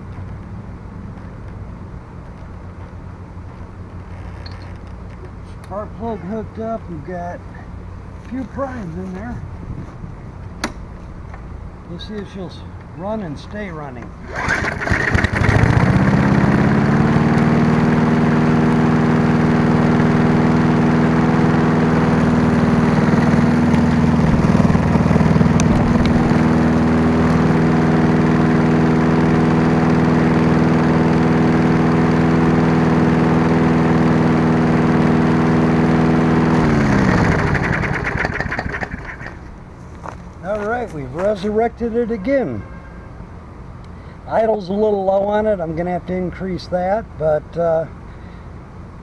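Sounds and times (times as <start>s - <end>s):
lawn mower engine running: 14.0s - 41.6s.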